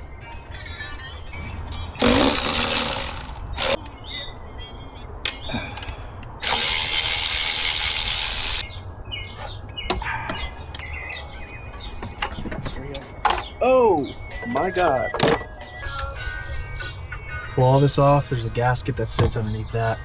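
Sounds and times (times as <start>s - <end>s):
ratchet clicks: 1.8s - 3.8s, 6.4s - 8.6s.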